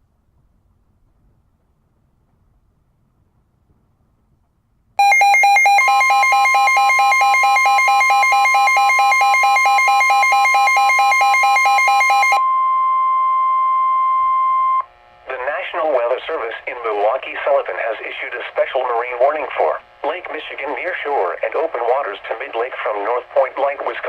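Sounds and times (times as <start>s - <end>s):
two-pitch electronic alarm beeping: 5.0s - 14.8s
steady single-pitch warning tone: 5.0s - 15.4s.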